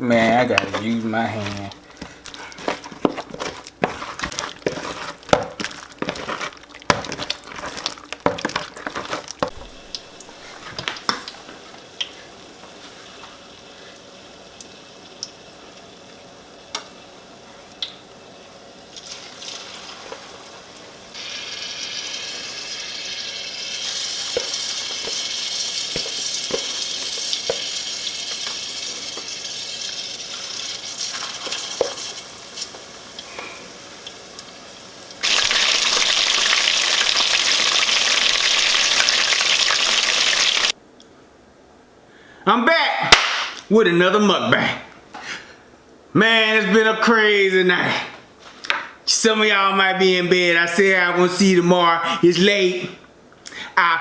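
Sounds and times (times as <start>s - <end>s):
shrimp frying in hot oil: 2.4s - 40.8s.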